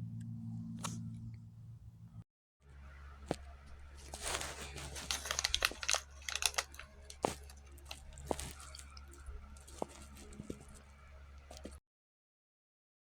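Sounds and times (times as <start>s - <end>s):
low steady rumble: 0.0s - 5.6s
close rustling and crackling: 3.3s - 11.8s
sharp clicks: 4.2s - 9.2s.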